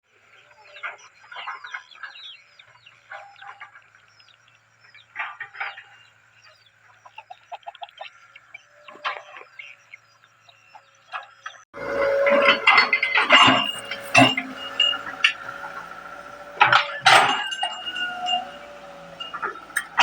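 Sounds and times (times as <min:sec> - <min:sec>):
birds chirping: 0:11.8 - 0:20.0.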